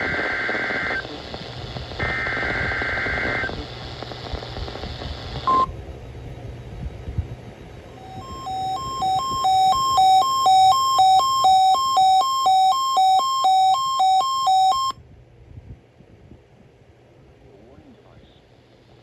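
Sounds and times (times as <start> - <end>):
two-tone electronic alarm beep: 5.5 - 5.7, 7.9 - 15.0.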